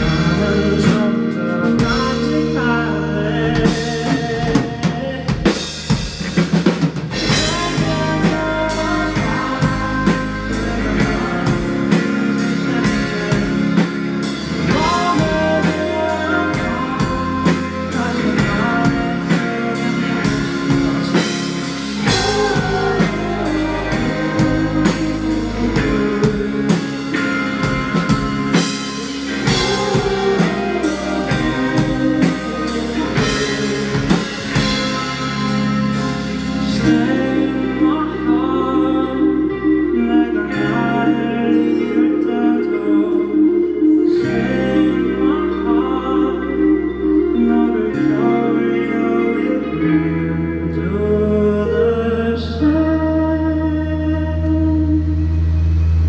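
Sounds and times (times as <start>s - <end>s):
person singing: 0.0s - 6.2s, 7.2s - 56.0s
drum kit beat: 0.0s - 37.4s
live rock band playing: 0.0s - 56.0s.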